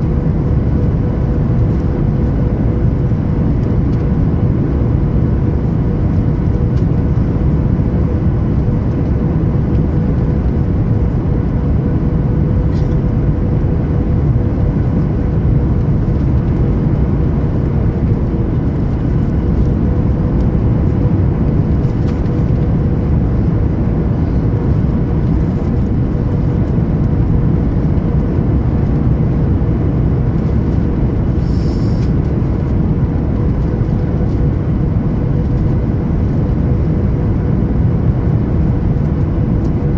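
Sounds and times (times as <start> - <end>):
airplane engines: 0.0 - 39.9
steady hum: 0.0 - 39.9
rush of air: 31.2 - 32.4.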